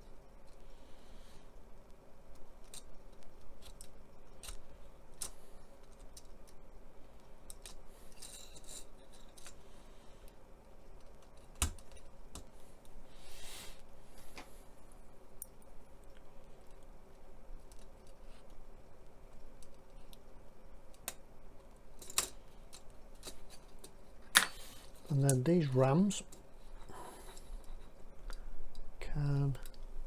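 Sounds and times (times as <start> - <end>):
plastic parts clicking and snipping: 2.3 - 6.6, 7.2 - 9.6.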